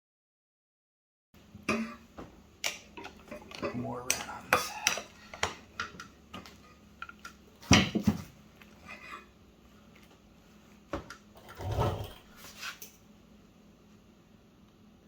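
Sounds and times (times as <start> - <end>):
metal parts clanking: 11.4 - 12.3.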